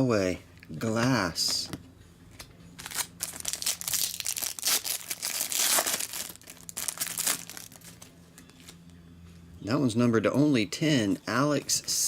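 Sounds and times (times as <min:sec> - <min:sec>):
packaging crinkling: 0:02.8 - 0:08.7.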